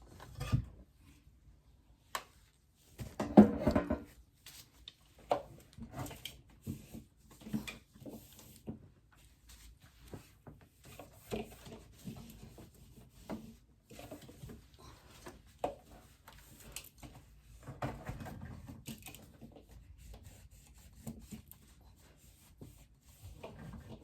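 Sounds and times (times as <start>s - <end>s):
items knocking and clattering: 3.0s - 4.2s.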